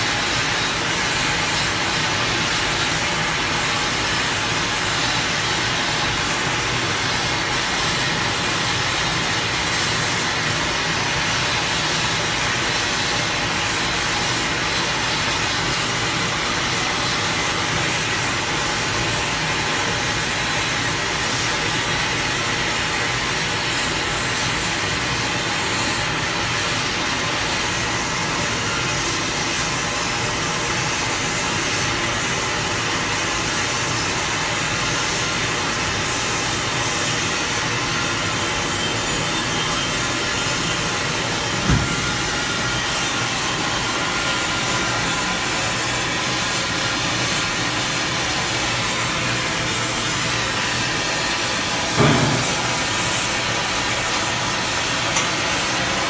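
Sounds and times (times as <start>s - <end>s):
hissing crackle of hot metal: 0.0s - 56.0s
short thump: 41.7s - 42.0s.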